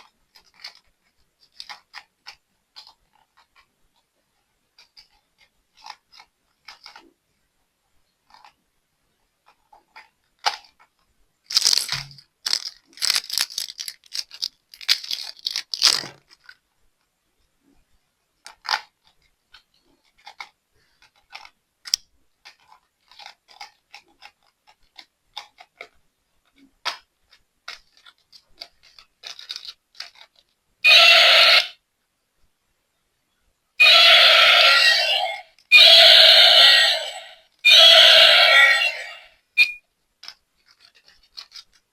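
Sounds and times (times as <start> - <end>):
plastic packaging crinkling: 11.5 - 16.6, 27.8 - 30.6
toy electronic roar: 30.8 - 31.8, 33.8 - 39.8.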